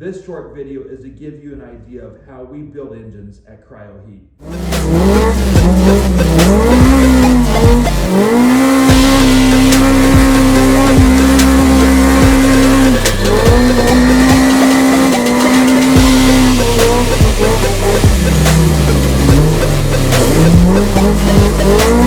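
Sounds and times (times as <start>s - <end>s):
background music with steady beat: 4.4s - 22.0s
race engine revving: 4.4s - 22.0s.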